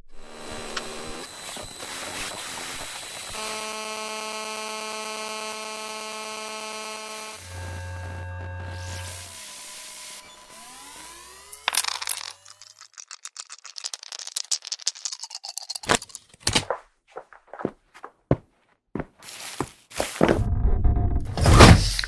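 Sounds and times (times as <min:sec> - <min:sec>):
fast clicks and rattles: 0:11.5 - 0:16.5.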